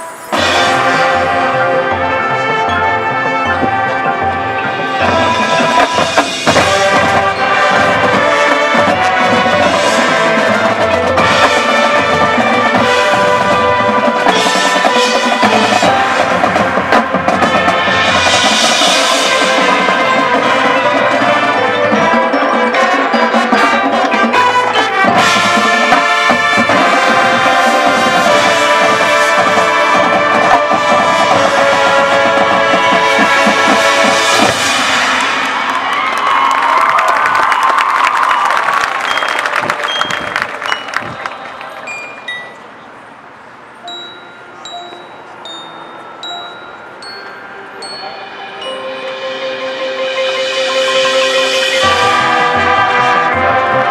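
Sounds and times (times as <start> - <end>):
brass sustaining chords: 0.0 - 36.0, 48.1 - 53.9
drumline: 0.1 - 42.7, 48.8 - 53.9.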